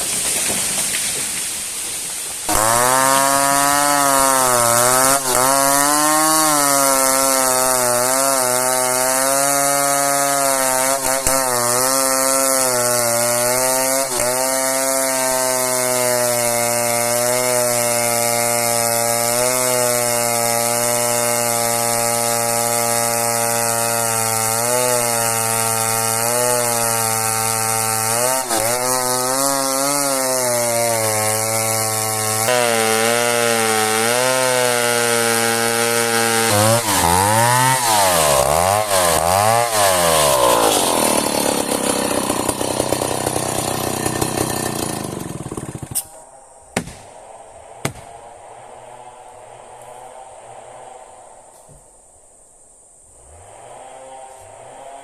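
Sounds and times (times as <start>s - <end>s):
chainsaw cutting wood: 0.0s - 46.2s, 46.8s - 51.0s, 53.1s - 55.0s
sharp knocks: 46.8s - 47.1s.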